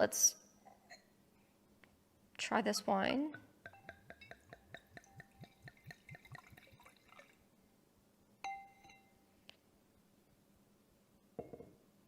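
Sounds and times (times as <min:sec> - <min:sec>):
glass clink: 0:03.6 - 0:06.8, 0:08.4 - 0:09.2, 0:11.4 - 0:11.7.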